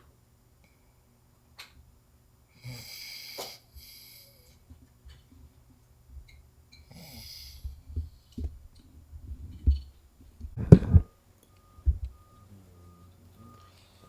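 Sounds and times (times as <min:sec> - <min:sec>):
man snoring: 0:02.6 - 0:03.5, 0:10.6 - 0:11.0.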